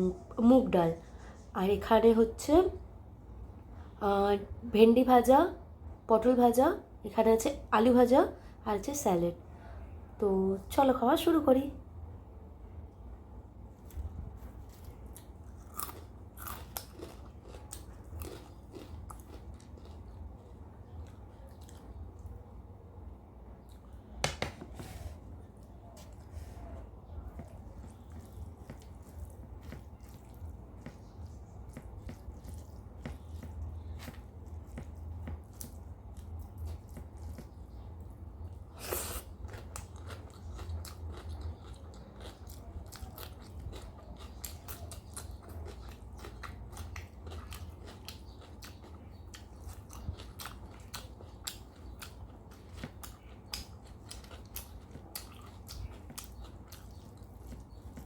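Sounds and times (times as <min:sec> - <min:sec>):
low steady hum: 0:00.0 - 0:58.0
close-miked chewing and crunching: 0:13.3 - 0:24.2, 0:25.3 - 0:58.0.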